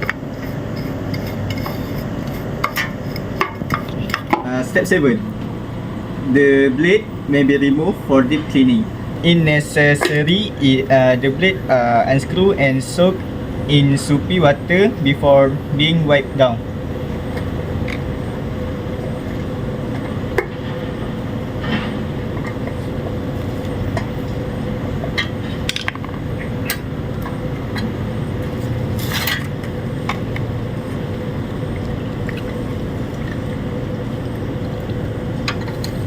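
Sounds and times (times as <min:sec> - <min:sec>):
steady hum: 0:00.0 - 0:36.0
water sloshing and splashing: 0:28.4 - 0:36.0.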